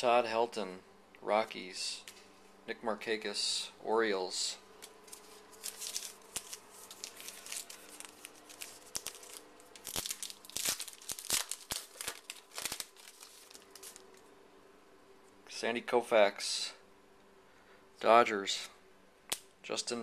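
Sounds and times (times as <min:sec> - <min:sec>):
foil wrapper tearing and crinkling: 0:05.0 - 0:14.2.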